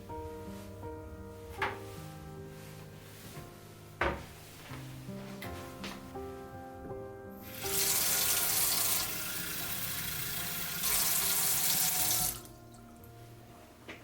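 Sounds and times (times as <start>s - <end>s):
tap water running into sink: 7.5s - 12.5s.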